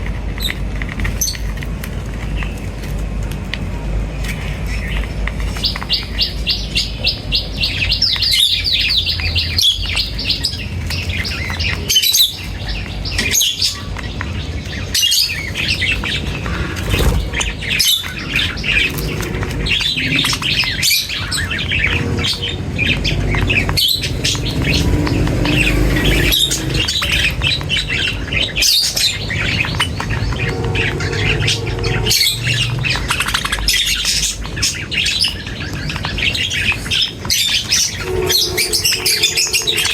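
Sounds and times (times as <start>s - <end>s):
flock of birds chirping: 0.0s - 39.9s
low steady rumble: 14.0s - 34.6s, 37.8s - 39.9s.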